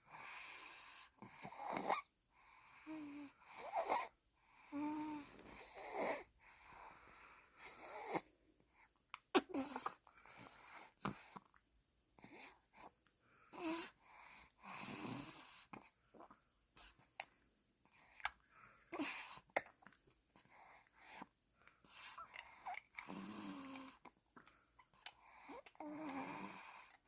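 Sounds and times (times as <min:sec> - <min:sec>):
baby snore-like breathing: 0:00.0 - 0:08.3, 0:13.5 - 0:15.8, 0:20.4 - 0:24.0, 0:25.2 - 0:27.0.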